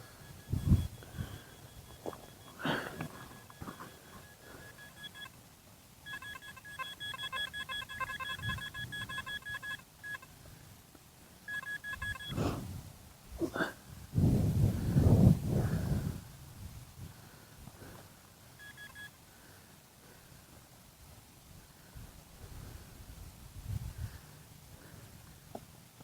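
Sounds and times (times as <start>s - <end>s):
metal detector beeping: 0.0s - 5.4s, 6.1s - 10.3s, 11.5s - 12.5s, 18.6s - 19.1s.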